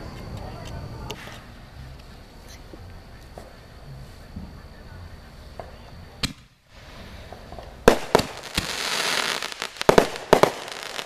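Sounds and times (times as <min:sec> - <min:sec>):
fireworks crackling and popping: 0:00.0 - 0:11.0
fireworks banging: 0:05.5 - 0:11.0.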